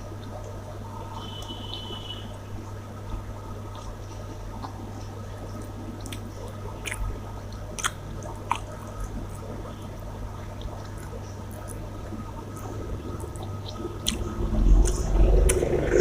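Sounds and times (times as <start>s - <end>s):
steady low hum: 0.0s - 16.0s
person chewing wetly: 3.7s - 15.7s.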